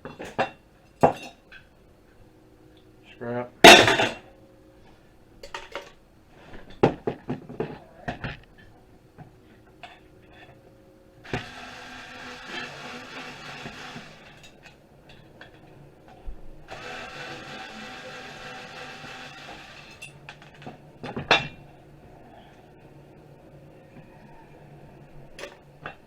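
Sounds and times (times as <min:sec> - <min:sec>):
steady mechanical whir: 0:11.2 - 0:14.6, 0:16.7 - 0:20.1.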